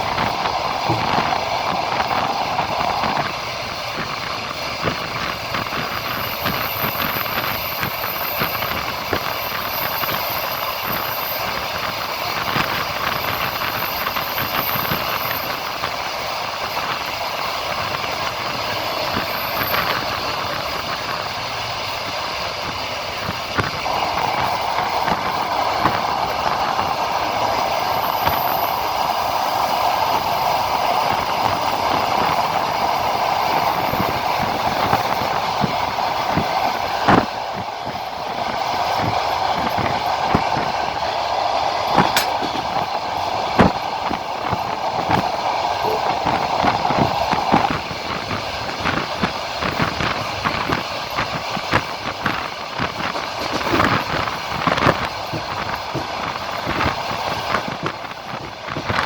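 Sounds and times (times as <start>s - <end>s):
train wheels rushing on rail: 0.0s - 59.0s
track clicks: 42.0s - 42.9s.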